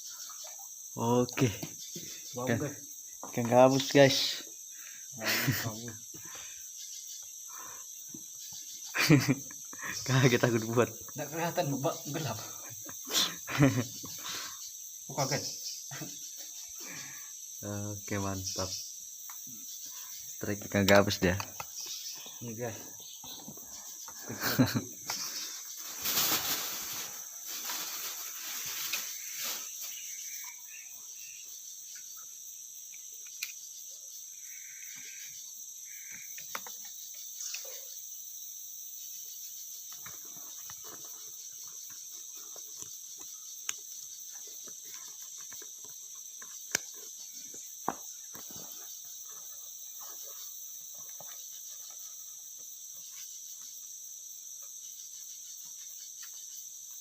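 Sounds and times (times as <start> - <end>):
crickets chirping: 0.0 - 57.0
rustling handling noise: 25.6 - 30.0.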